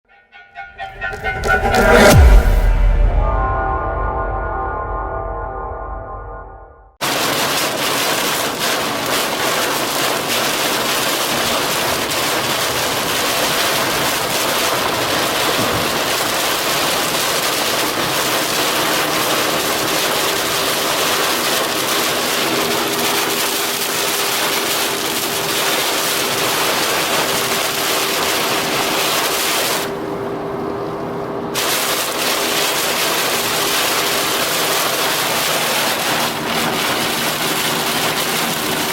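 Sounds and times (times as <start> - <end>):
heavy rain on a car: 7.0 - 38.9
tyre and road noise: 11.3 - 38.9.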